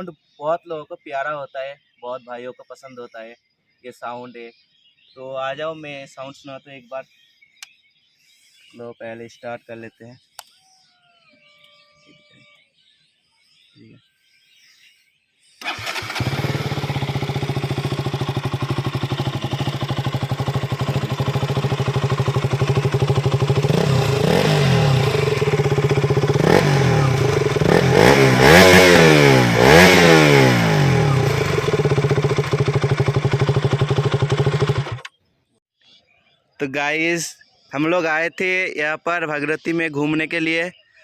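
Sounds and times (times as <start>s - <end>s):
motorcycle engine idling and revving: 15.6s - 35.1s.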